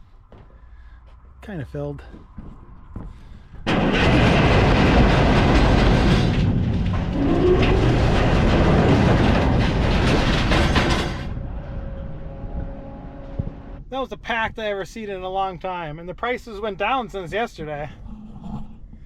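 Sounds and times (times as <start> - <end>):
scrap metal clattering and grinding: 3.0 - 13.8.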